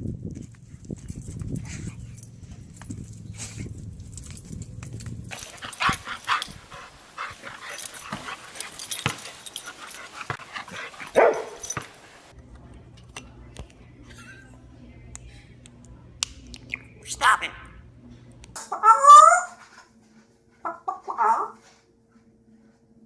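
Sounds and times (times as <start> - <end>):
low steady hum: 0.0 - 23.0
bark-like calls and yelps: 11.1 - 11.7, 18.6 - 19.7, 20.6 - 21.6.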